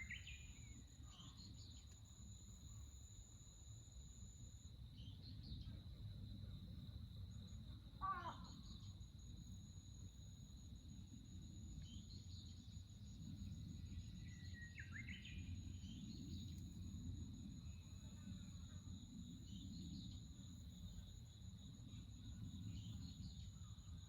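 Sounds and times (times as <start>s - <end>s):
songbird chirping: 0.0s - 2.0s
high insect trill: 0.0s - 24.0s.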